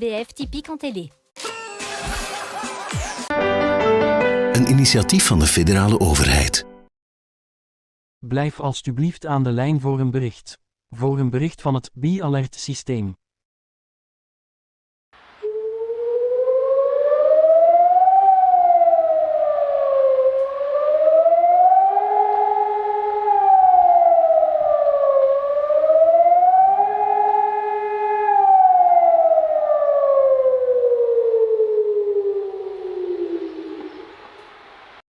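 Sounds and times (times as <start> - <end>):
civil defense siren wailing: 15.4 - 34.6.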